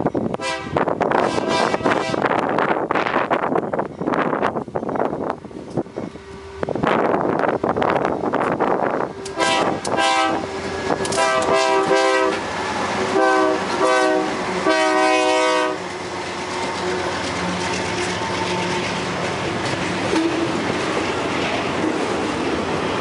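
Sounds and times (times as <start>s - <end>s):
train rumble and wheel clatter: 0.0s - 23.0s
locomotive air horn blasts: 0.4s - 2.4s, 9.2s - 12.5s, 13.1s - 15.9s, 20.1s - 20.6s.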